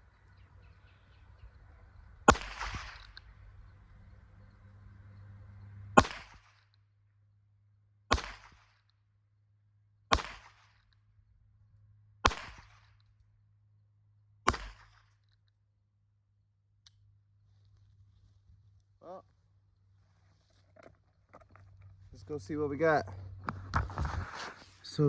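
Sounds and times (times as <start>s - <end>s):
gunshots with echo: 2.3s - 3.2s, 6.0s - 6.6s, 8.1s - 8.7s, 10.1s - 10.7s, 12.3s - 12.8s, 14.5s - 15.0s.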